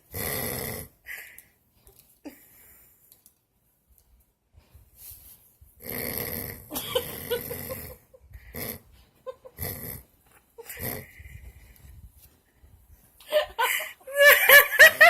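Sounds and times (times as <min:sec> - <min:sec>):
person snoring: 0:00.1 - 0:00.9, 0:05.8 - 0:08.9, 0:10.6 - 0:11.4.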